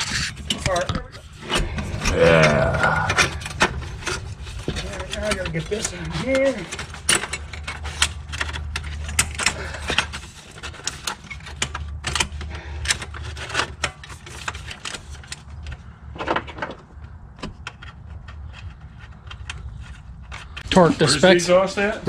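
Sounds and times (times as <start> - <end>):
steady low hum: 0.3 - 10.9.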